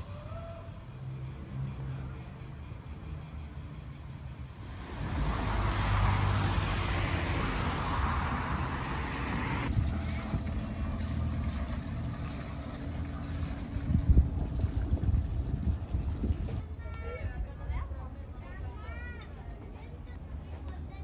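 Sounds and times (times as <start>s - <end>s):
low engine rumble: 4.2s - 16.8s.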